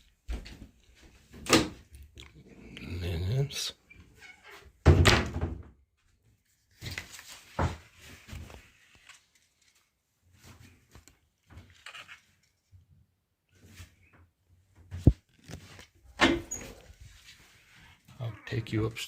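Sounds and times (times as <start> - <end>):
rustling: 14.9 - 18.1.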